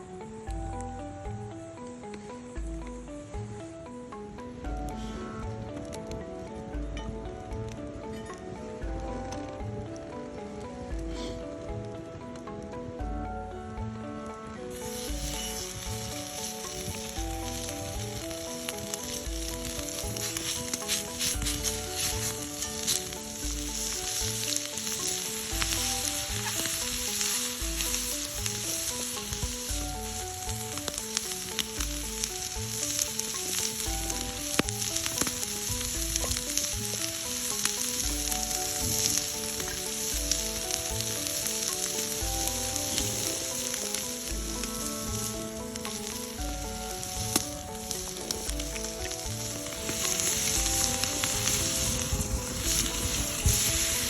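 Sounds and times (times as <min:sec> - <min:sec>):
background music with beat: 0:00.0 - 0:54.0
food sizzling in a pan: 0:14.7 - 0:54.0.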